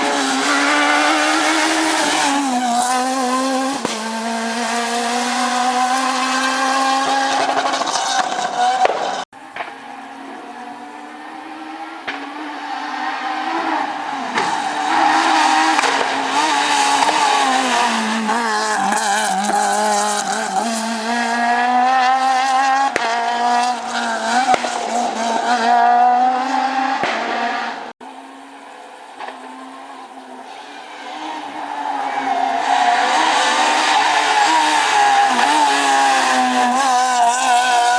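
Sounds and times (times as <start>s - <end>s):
rally car engine revving: 0.0s - 28.0s, 29.2s - 37.9s.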